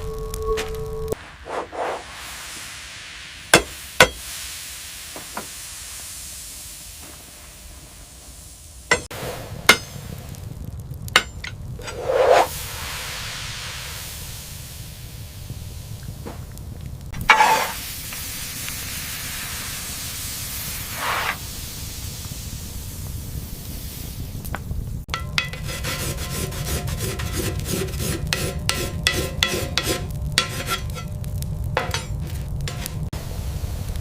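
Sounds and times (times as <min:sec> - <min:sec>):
hissing: 0:01.1 - 0:25.0
metal tools tapping and scraping steel: 0:11.2 - 0:12.0, 0:25.1 - 0:26.2, 0:28.3 - 0:31.1, 0:31.8 - 0:33.0.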